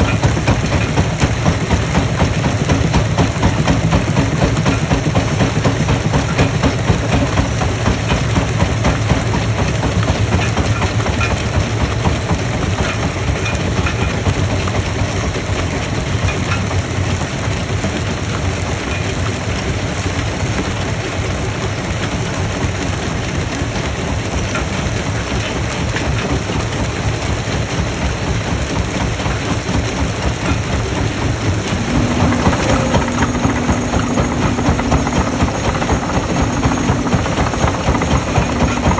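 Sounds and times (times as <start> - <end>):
heavy engine running: 0.0 - 38.9
rock being crushed rattling: 30.3 - 38.9
steady low hum: 30.8 - 38.9.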